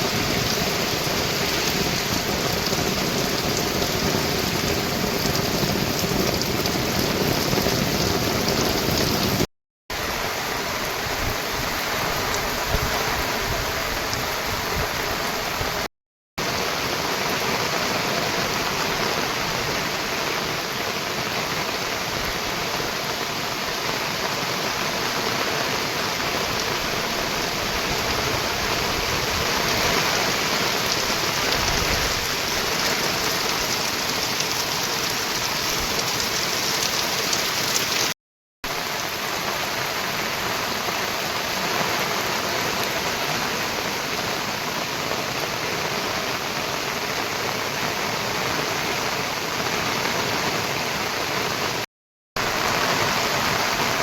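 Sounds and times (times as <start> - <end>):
heavy rain hissing: 0.0 - 54.0.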